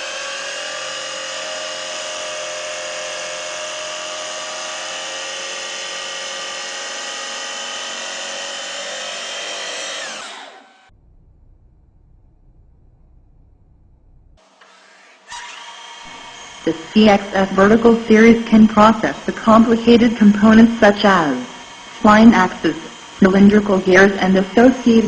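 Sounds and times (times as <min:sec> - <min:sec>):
lathe spindle high whine: 0:00.0 - 0:10.9, 0:14.5 - 0:25.0
faint low hum: 0:10.9 - 0:14.4.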